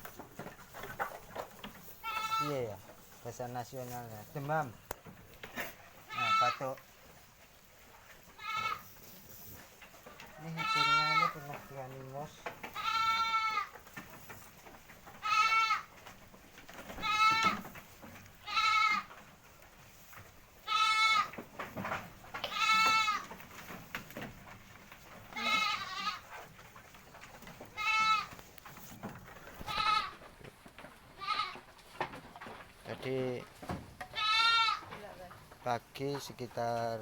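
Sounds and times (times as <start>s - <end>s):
goat bleating: 2.0s - 2.8s, 5.6s - 6.8s, 8.3s - 9.0s, 10.4s - 11.7s, 12.6s - 13.8s, 15.1s - 16.0s, 16.9s - 17.7s, 18.4s - 19.2s, 20.6s - 21.4s, 22.4s - 23.5s, 25.2s - 26.5s, 27.6s - 28.5s, 29.6s - 30.3s, 31.1s - 31.7s, 34.1s - 35.1s.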